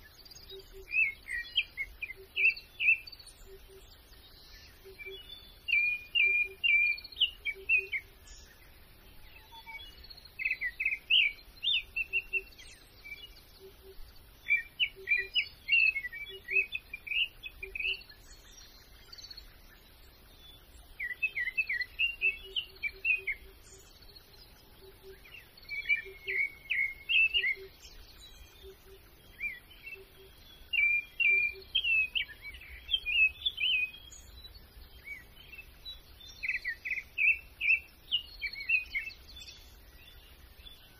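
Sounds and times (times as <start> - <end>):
faint outdoor background noise: 0.0 - 40.9
songbird chirping: 0.0 - 40.9.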